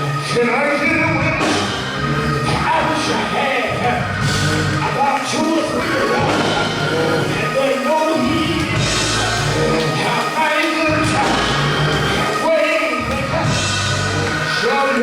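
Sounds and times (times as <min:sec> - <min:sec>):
instruments with sustained bass: 0:01.1 - 0:05.0, 0:05.8 - 0:07.5, 0:08.3 - 0:10.1, 0:10.9 - 0:12.3, 0:13.1 - 0:14.5
person singing: 0:02.2 - 0:15.0.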